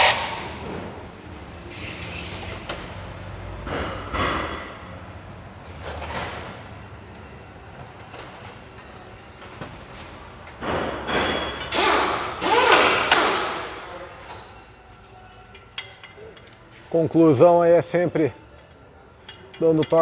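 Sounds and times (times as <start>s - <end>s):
power tool bursts: 11.7s - 13.7s.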